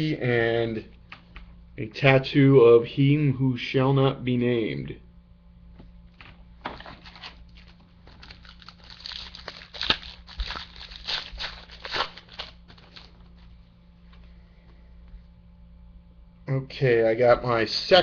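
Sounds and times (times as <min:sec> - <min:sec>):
wrapper tearing and crinkling: 0:06.9 - 0:13.2.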